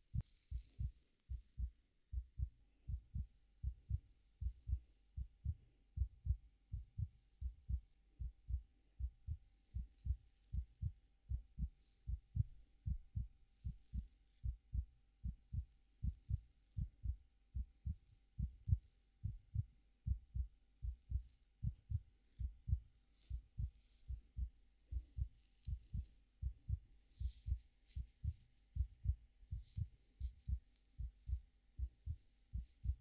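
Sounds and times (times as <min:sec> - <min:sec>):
soft swishes of hair being stroked: 0:00.0 - 0:01.7, 0:09.4 - 0:10.9, 0:20.8 - 0:24.2, 0:24.8 - 0:26.3, 0:26.9 - 0:33.0
heartbeat thumping: 0:00.1 - 0:33.0.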